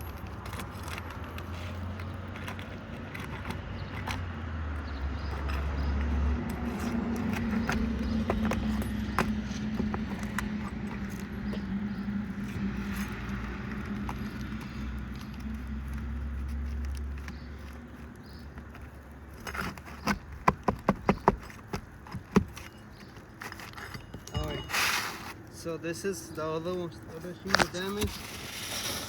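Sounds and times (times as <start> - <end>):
tools scraping: 0.0 - 25.6.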